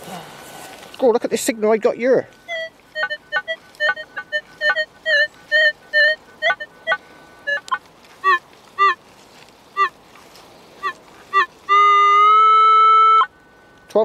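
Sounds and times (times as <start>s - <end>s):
metal detector beeps: 1.0s - 9.0s
metal detector steady tone: 1.0s - 9.0s.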